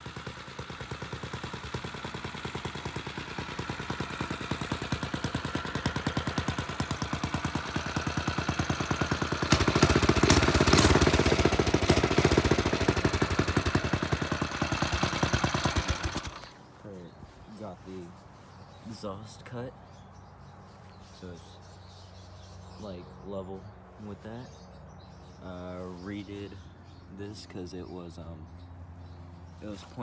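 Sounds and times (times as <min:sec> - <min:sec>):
minibike engine running: 0:00.0 - 0:16.7.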